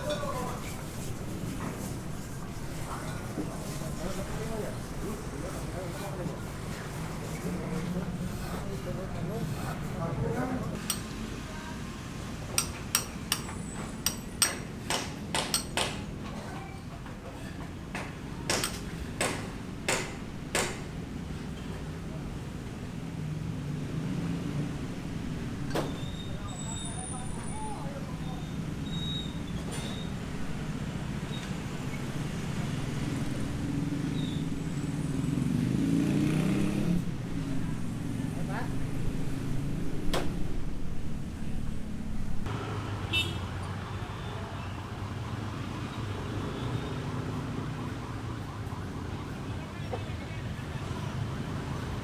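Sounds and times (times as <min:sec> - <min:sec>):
vehicle engine rumble: 0:00.0 - 0:14.9, 0:18.7 - 0:43.9
hammer strikes: 0:12.5 - 0:16.1, 0:17.9 - 0:21.0.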